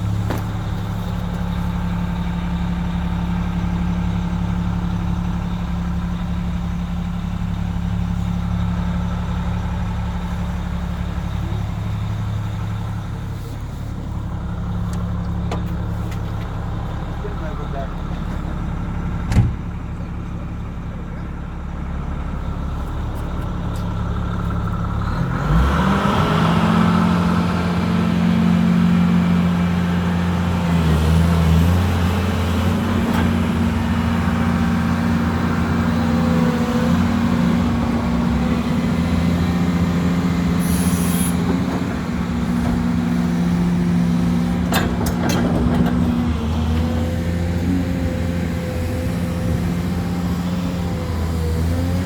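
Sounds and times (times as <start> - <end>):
excavator diesel engine: 0.0 - 52.0
brief hiss: 40.6 - 41.4.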